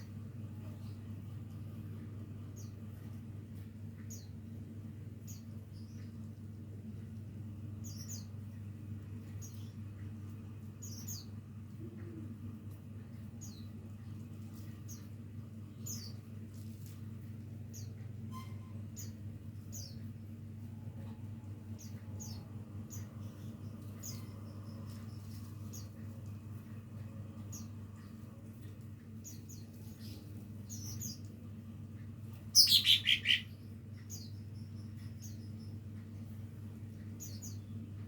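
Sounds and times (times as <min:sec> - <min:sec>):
bird chirping: 0:32.5 - 0:35.8.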